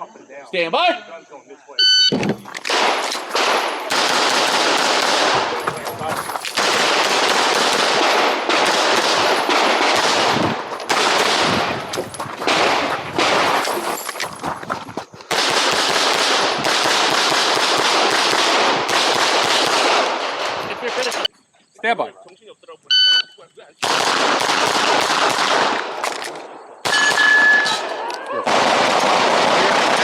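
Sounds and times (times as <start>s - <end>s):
pistol shots: 2.6s - 13.7s, 15.3s - 20.6s, 23.8s - 30.0s.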